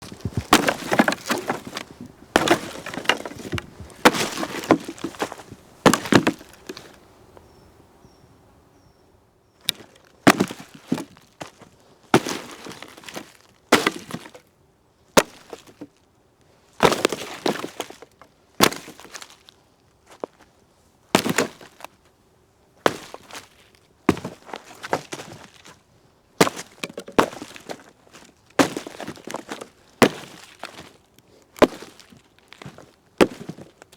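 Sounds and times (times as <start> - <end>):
tree trunk being kicked: 0.0 - 7.0, 10.3 - 11.1, 26.4 - 27.9.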